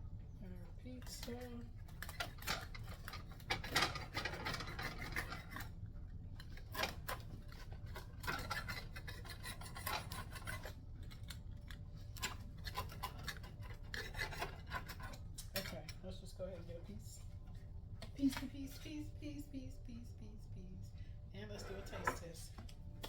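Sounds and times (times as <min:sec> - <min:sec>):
knife sawing through pizza crust: 0:03.0 - 0:05.7, 0:06.6 - 0:10.8, 0:12.2 - 0:15.2.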